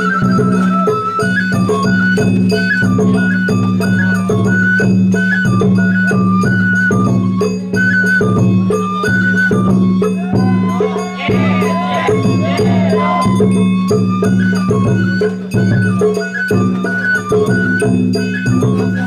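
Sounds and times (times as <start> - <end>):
bamboo flute melody: 0.0 - 19.0
jangling hand gong: 0.0 - 19.0
drums beating: 5.6 - 19.0
voices calling out: 10.1 - 13.8.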